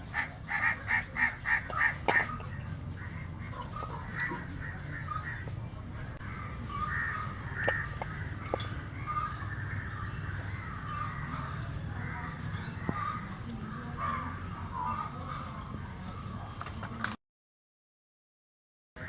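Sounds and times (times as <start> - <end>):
crows cawing: 0.1 - 2.4, 3.0 - 5.5, 6.3 - 13.2.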